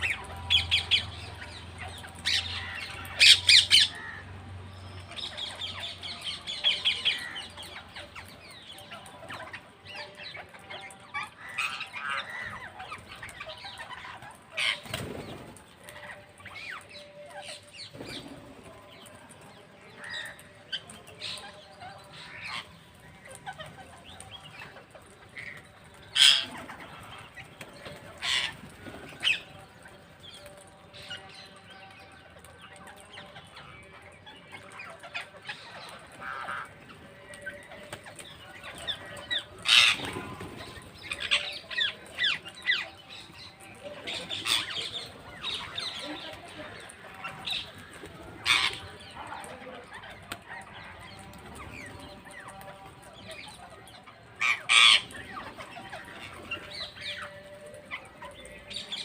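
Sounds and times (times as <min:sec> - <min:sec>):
parrots chattering and screeching: 0:10.4 - 0:15.2, 0:24.4 - 0:29.4, 0:34.6 - 0:43.2, 0:44.2 - 0:49.2, 0:54.4 - 0:57.2.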